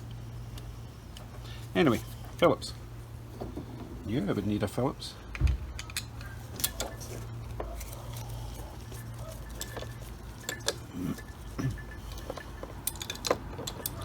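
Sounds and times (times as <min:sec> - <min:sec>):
screwdriver and small parts clinking: 0:05.4 - 0:14.0.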